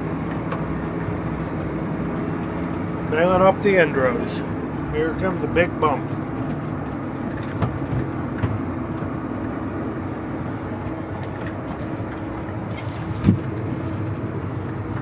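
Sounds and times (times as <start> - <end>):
tractor engine running: 0.0 - 15.0
knocks and thumps from baler: 5.0 - 8.6, 11.8 - 13.9.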